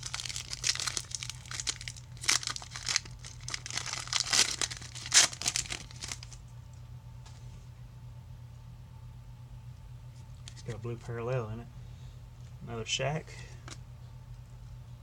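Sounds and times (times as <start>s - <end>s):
plastic wrapper tearing and crinkling: 0.0s - 6.4s.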